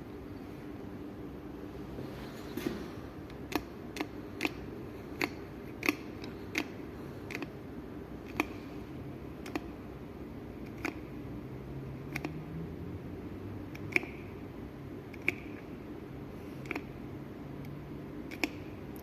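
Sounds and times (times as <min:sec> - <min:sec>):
sharp clicks: 0:08.2 - 0:08.6, 0:09.4 - 0:09.7, 0:10.6 - 0:11.1, 0:12.1 - 0:12.4, 0:13.7 - 0:14.2, 0:17.6 - 0:19.0.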